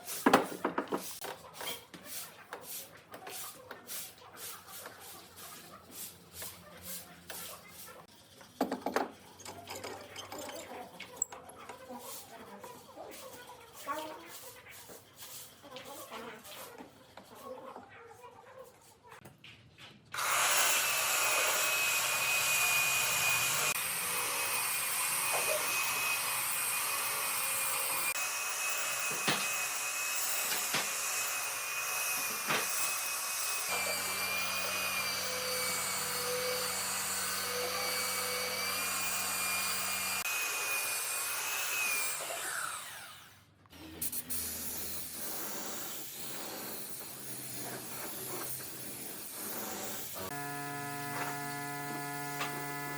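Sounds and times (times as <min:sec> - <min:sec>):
power tool motor whine on wood: 0:20.2 - 0:43.4, 0:44.5 - 0:52.9.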